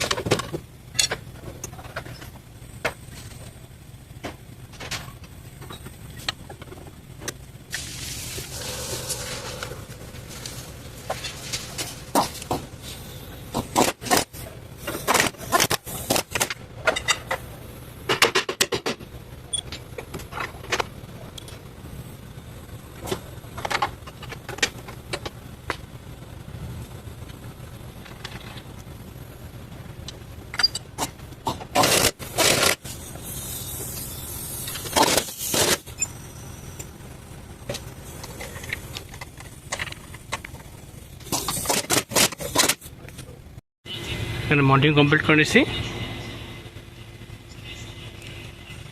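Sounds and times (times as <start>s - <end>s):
low hum: 7.4s - 18.0s.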